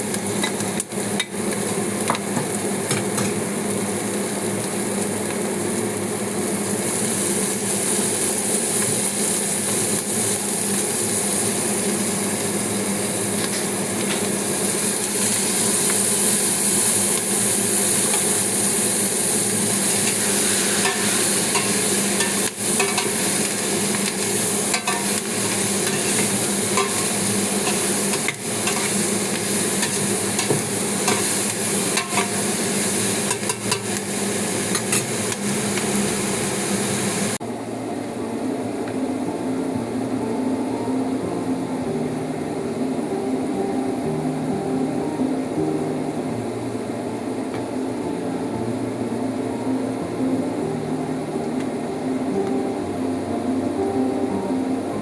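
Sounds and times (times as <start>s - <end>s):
food sizzling in a pan: 0.0s - 37.4s.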